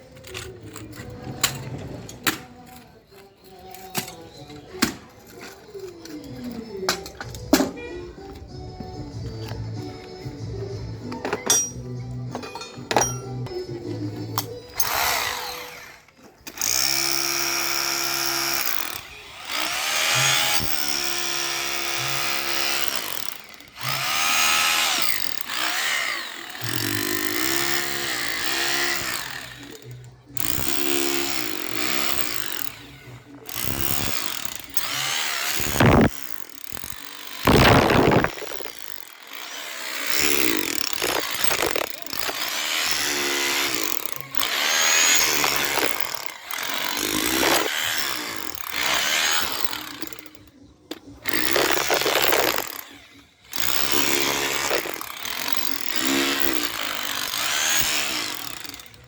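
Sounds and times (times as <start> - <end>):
electric drill boring into concrete: 14.8 - 50.5, 51.2 - 59.0.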